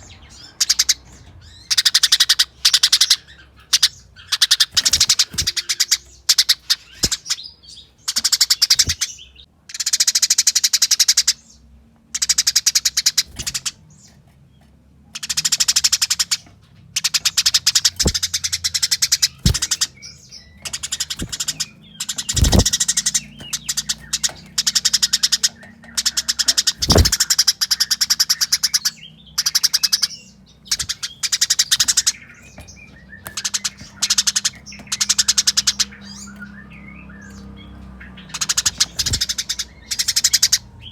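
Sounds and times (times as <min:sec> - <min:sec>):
sparrows chattering chirps: 0:00.0 - 0:40.9
dull thumps: 0:04.7 - 0:05.7, 0:17.9 - 0:24.7, 0:26.8 - 0:27.4, 0:38.6 - 0:39.4.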